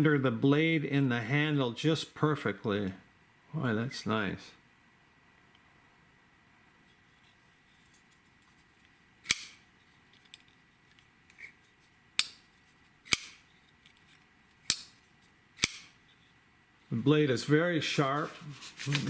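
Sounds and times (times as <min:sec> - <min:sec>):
pocket knife blade snapping shut: 0:09.2 - 0:09.6, 0:12.2 - 0:12.4, 0:13.1 - 0:13.4, 0:14.6 - 0:15.0, 0:15.6 - 0:16.0.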